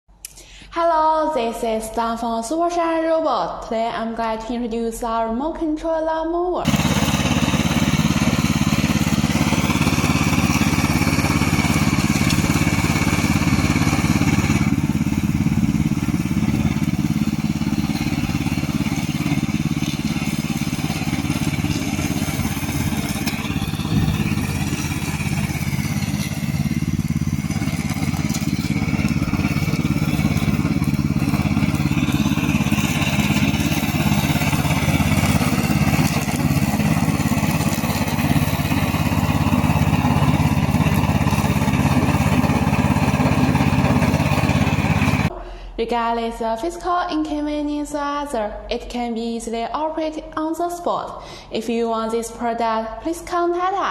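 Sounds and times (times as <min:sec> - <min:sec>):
lawn mower engine hum: 0:06.6 - 0:45.3
high whine shifting pitch: 0:06.7 - 0:37.6.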